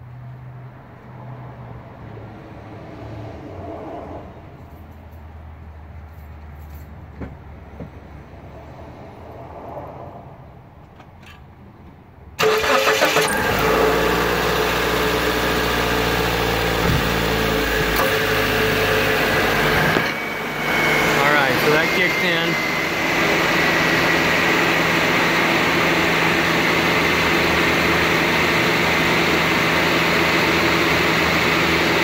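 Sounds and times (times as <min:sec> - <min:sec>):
car engine starting and idling: 0:10.7 - 0:32.0.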